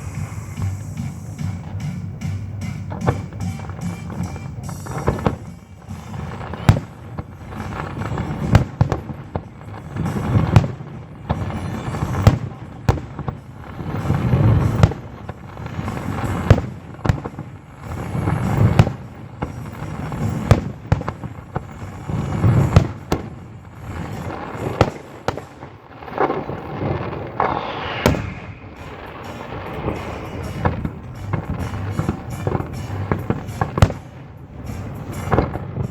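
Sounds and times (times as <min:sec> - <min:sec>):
fireworks bursting with sharp bangs: 0:00.0 - 0:35.9
fireworks crackle and rumble: 0:00.0 - 0:35.9.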